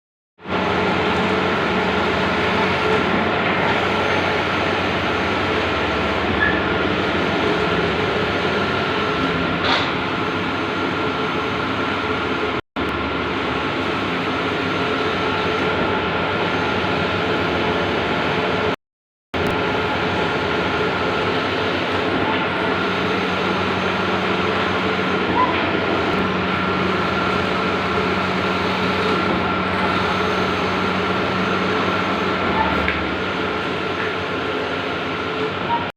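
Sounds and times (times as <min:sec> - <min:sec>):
printing machine humming and whirring: 0:00.4 - 0:18.8, 0:19.4 - 0:35.9.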